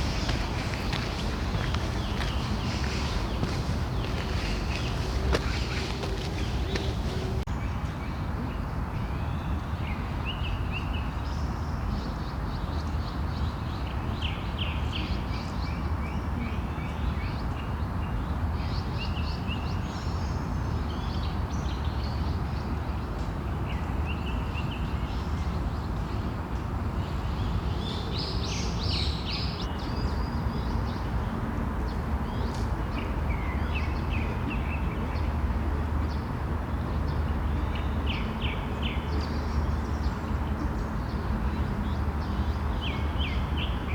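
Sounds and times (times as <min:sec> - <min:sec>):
birds chirping: 0:00.0 - 0:07.5.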